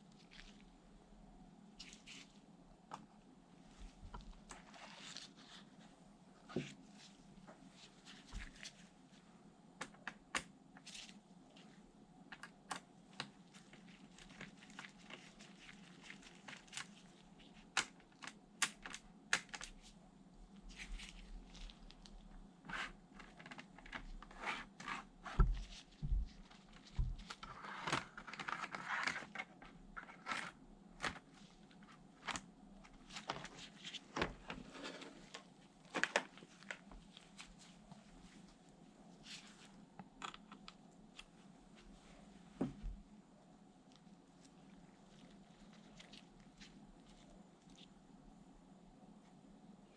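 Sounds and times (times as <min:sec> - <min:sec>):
plastic crinkling: 0:13.2 - 0:19.7
rustling: 0:43.8 - 0:48.0.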